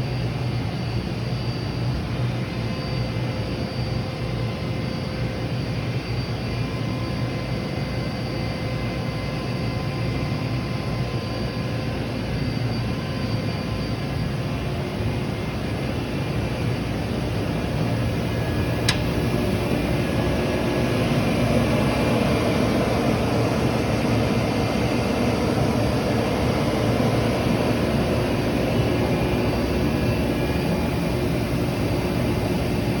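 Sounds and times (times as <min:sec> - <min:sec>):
boring mill machine hum: 0:14.8 - 0:33.0
sharp click: 0:18.8 - 0:19.7.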